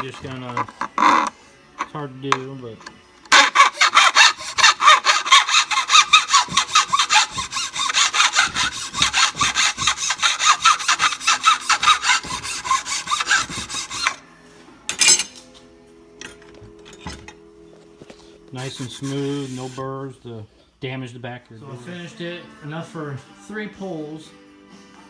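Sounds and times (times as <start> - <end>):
rasping strokes on plastic pipe: 0.0 - 2.0, 3.3 - 14.2, 18.1 - 19.9
short rubbing: 3.3 - 14.2, 16.4 - 19.9.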